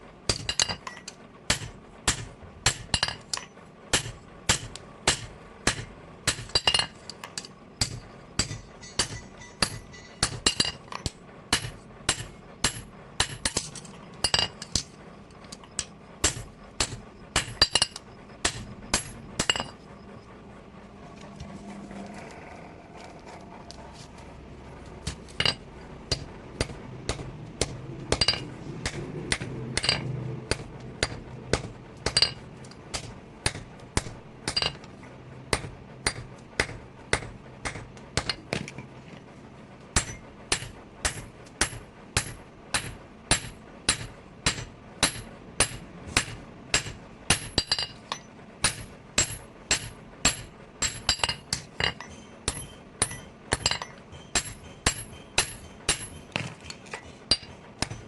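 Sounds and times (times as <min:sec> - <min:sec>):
low hum: 0:00.0 - 0:58.0
hammer striking steel on anvil: 0:00.3 - 0:14.9, 0:15.6 - 0:19.8, 0:25.0 - 0:34.9, 0:35.5 - 0:38.5, 0:40.0 - 0:58.0.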